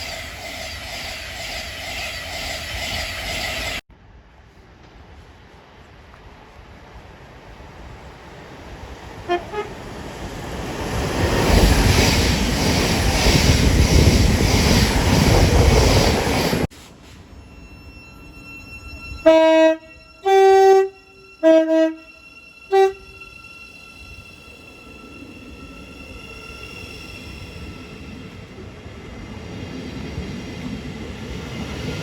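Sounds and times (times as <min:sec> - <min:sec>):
train rumbling past: 0:00.0 - 0:32.0
faint train horn toots: 0:09.2 - 0:09.8, 0:18.9 - 0:24.2
two-tone train horn blasts: 0:09.2 - 0:09.8, 0:19.1 - 0:23.3.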